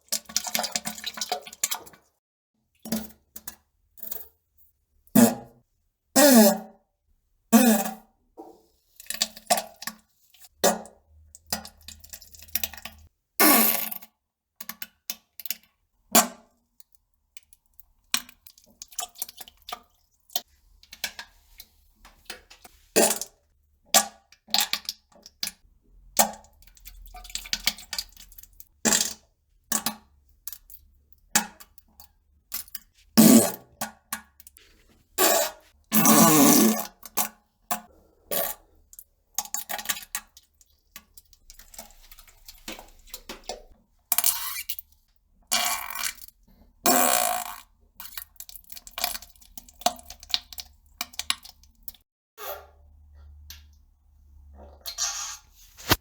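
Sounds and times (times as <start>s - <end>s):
fart sounds: 13.4s - 14.0s, 33.2s - 33.6s, 35.2s - 36.8s.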